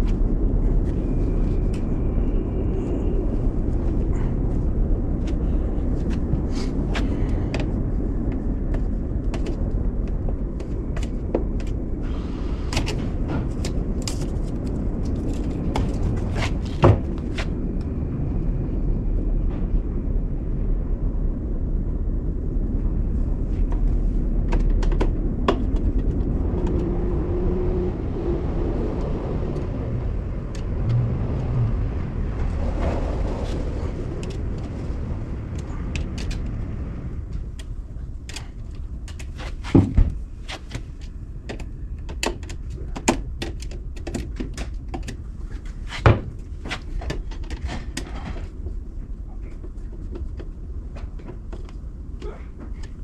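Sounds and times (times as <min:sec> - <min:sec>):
low engine-like rumble: 0:00.0 - 0:53.0
sharp knocks and clanks: 0:39.1 - 0:40.9.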